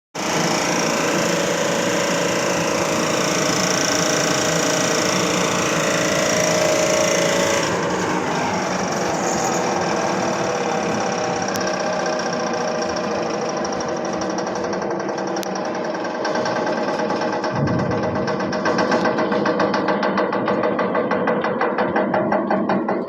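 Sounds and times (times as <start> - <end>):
industrial blower rattling: 0.2 - 23.0
steady tone: 17.5 - 19.2.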